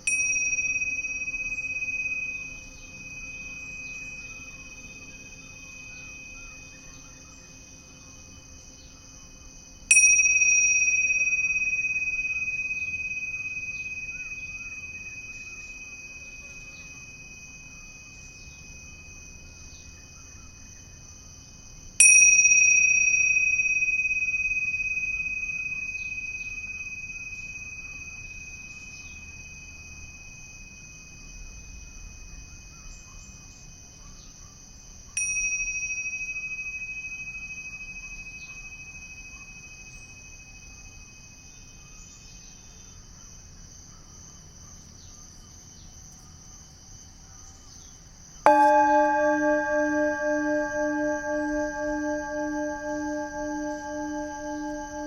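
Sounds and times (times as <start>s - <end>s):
singing bowl ringing: 0.0s - 7.5s, 9.9s - 19.8s, 22.0s - 31.3s, 35.2s - 41.5s, 48.5s - 55.0s.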